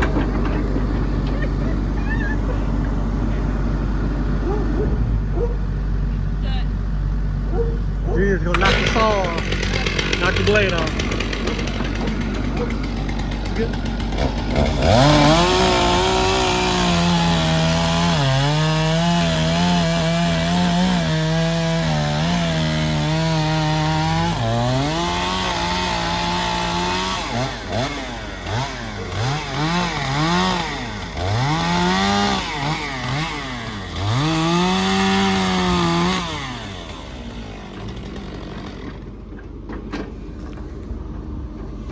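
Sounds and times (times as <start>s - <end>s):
chainsaw engine revving: 8.4s - 39.3s.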